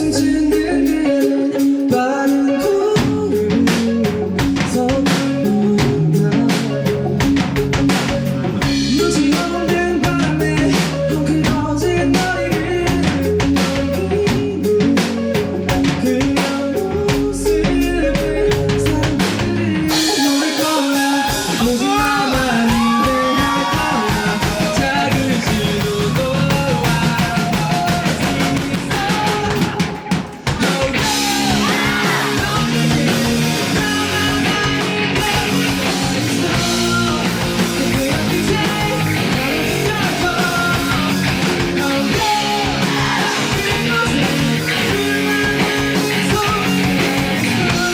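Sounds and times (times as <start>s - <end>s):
bass guitar: 0.0s - 47.9s
drum kit beat: 0.0s - 47.9s
electric guitar: 0.0s - 47.9s
rock band playing live: 0.0s - 47.9s.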